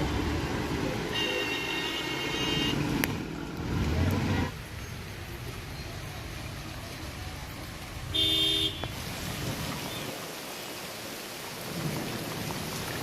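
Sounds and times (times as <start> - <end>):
steady rain falling: 0.0 - 13.0
car horn toot: 1.1 - 2.8, 8.1 - 8.9.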